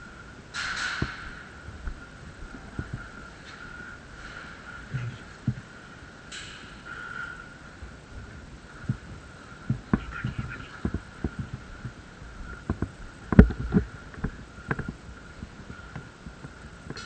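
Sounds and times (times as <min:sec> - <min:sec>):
faint high whine: 0:00.0 - 0:17.0.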